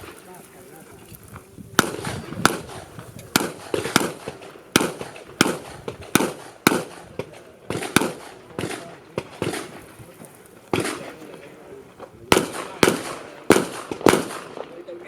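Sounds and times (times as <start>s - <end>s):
handgun shots: 1.8s - 9.8s, 12.3s - 14.7s.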